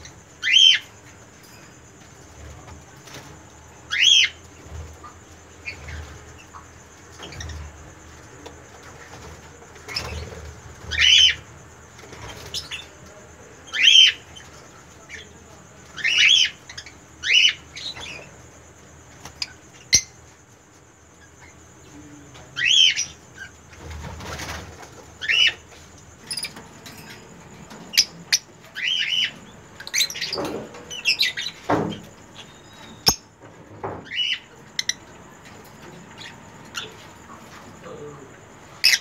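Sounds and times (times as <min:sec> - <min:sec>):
lovebirds chirping: 0:25.2 - 0:39.0.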